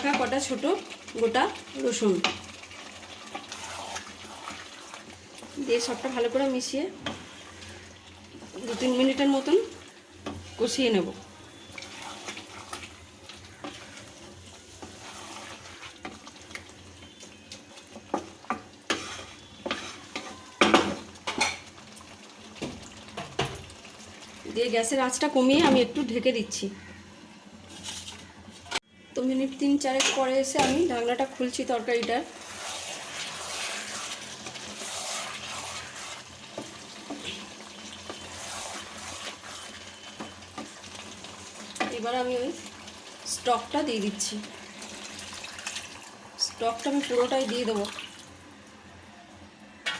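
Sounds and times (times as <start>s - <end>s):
curry sizzling in a pan: 0.0s - 49.9s
spatula scraping pan: 3.2s - 7.8s, 8.4s - 9.5s, 11.5s - 16.2s, 18.0s - 21.6s, 30.0s - 40.8s.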